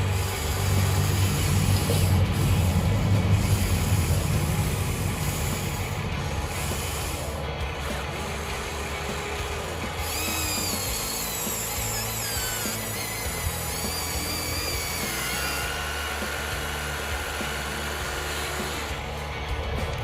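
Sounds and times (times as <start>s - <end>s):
small gear motors whining: 0.0s - 20.0s
steady low hum: 0.0s - 20.0s.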